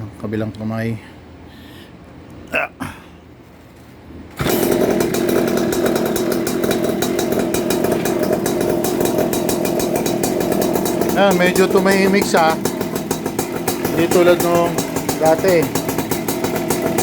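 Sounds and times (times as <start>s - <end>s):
scooter engine starting and running: 4.3s - 17.0s.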